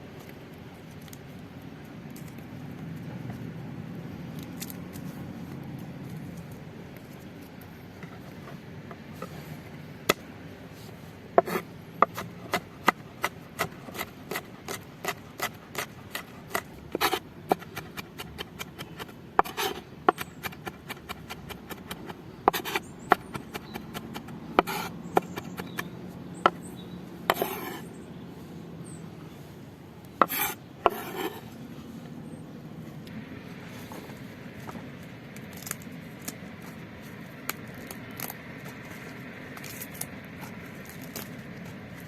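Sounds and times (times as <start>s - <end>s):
knife chopping on wooden board: 11.4s - 26.6s, 27.3s - 27.8s, 30.2s - 31.4s
knife blade scraping: 13.6s - 21.9s, 22.5s - 25.9s, 27.3s - 27.9s, 30.2s - 31.4s.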